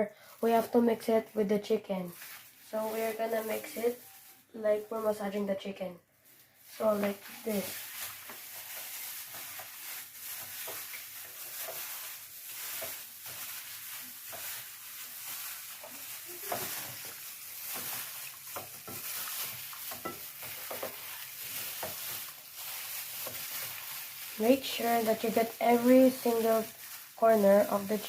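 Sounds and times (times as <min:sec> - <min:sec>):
wet squishing of raw meat: 0:07.3 - 0:24.4.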